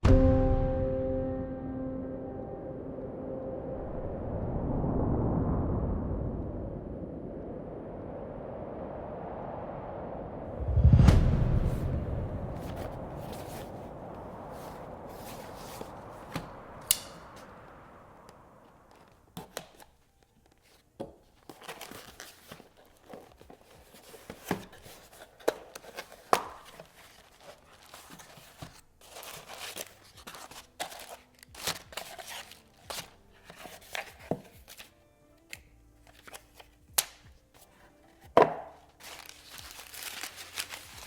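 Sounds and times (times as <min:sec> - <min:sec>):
packaging crinkling and tearing: 0:21.4 - 0:34.9, 0:38.8 - 0:41.0.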